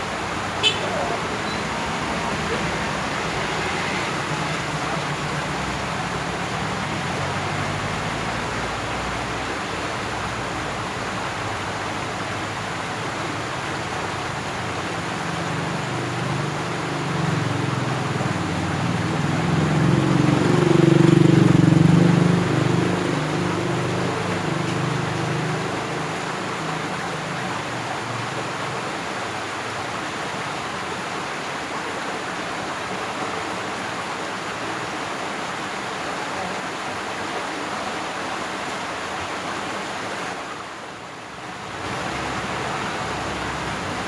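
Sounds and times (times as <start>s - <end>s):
steady rushing background noise: 0.0s - 44.0s
vehicle engine passing: 0.5s - 9.2s, 16.2s - 27.2s.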